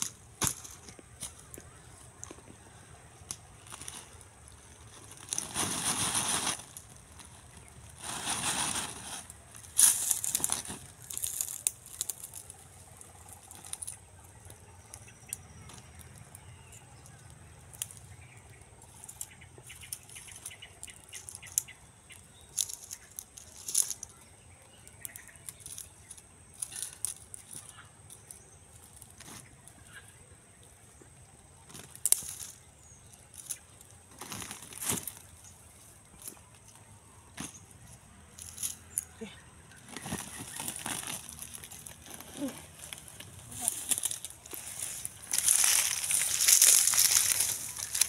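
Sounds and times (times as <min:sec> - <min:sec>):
clicks and crackles: 0:00.0 - 0:07.7, 0:09.6 - 0:24.2, 0:30.5 - 0:35.4
leaves rustling and crackling: 0:00.0 - 0:48.0.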